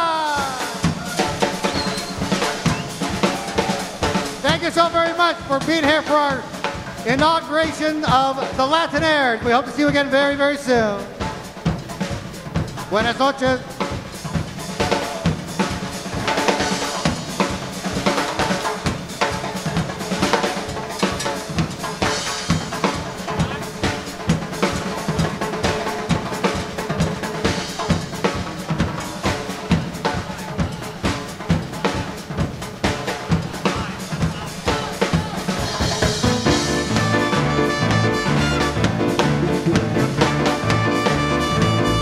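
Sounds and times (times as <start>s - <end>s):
drum kit rhythm with rimshots: 0.0s - 42.0s
latin dance band playing: 0.0s - 42.0s.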